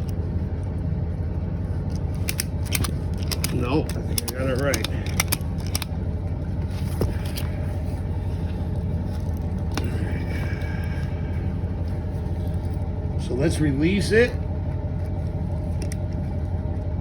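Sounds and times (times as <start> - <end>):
engine rumbling: 0.0 - 17.0
ratchet strap clicks: 1.9 - 5.9.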